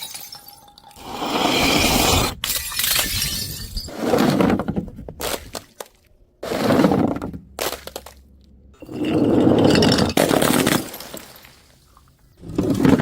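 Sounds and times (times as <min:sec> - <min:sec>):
glass bottles breaking: 0:00.0 - 0:03.9, 0:08.8 - 0:11.7.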